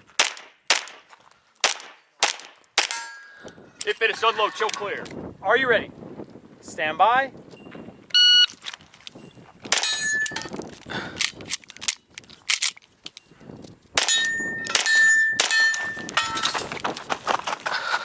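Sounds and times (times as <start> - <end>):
steel targets ringing: 2.8 - 3.5, 9.8 - 10.5, 14.0 - 16.6
shot timer beep: 8.2 - 8.5.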